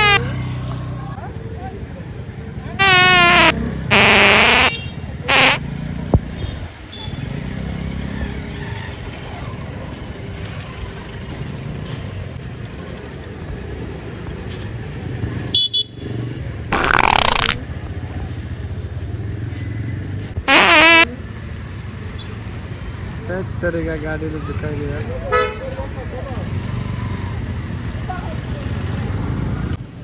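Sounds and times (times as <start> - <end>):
fake fart sound effects: 0.0 - 0.2, 2.8 - 5.6, 16.7 - 17.6, 20.5 - 21.1
street traffic with motorcycles: 0.0 - 30.0.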